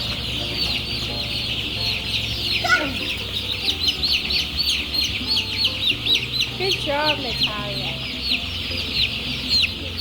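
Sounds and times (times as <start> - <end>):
chicks peeping: 0.0 - 10.0.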